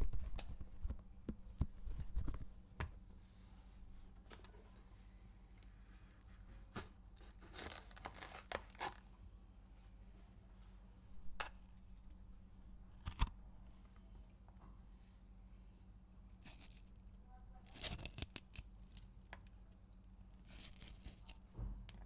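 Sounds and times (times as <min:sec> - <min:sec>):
knife cutting pepper: 0:06.3 - 0:09.0, 0:13.0 - 0:13.3, 0:16.4 - 0:16.9, 0:17.7 - 0:18.7, 0:20.4 - 0:21.4.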